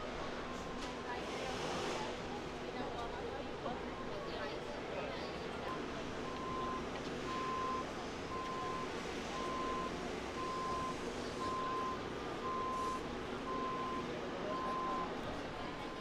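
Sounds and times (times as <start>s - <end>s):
outdoor background noise: 0.0s - 16.0s
vehicle reversing alarm beeping: 5.7s - 16.0s.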